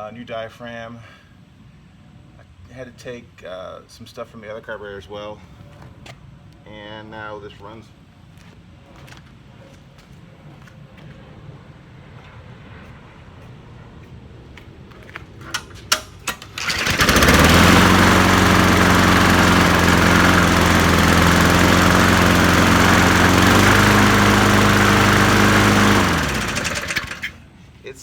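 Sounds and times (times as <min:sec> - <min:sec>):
lawn mower engine running: 0:15.5 - 0:27.5.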